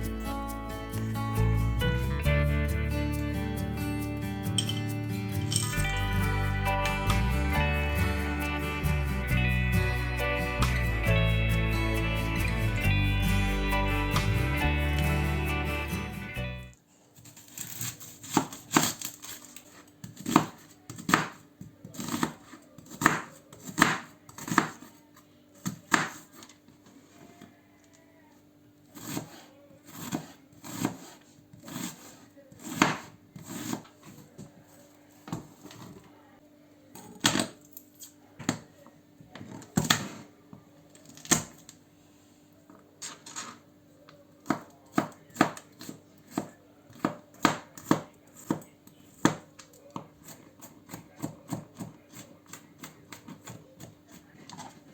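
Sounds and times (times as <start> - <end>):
knife chopping on cutting board: 18.2 - 19.0, 20.0 - 21.4, 22.0 - 24.9, 25.6 - 26.4, 29.0 - 33.8, 44.4 - 48.6, 49.2 - 54.8.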